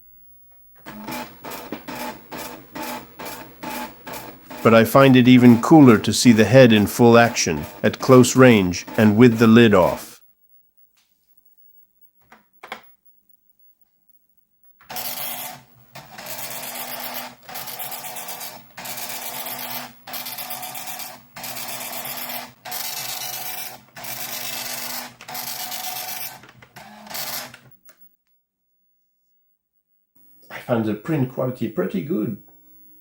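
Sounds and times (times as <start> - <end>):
dot matrix printer chatter: 0.9 - 10.1, 14.9 - 27.6.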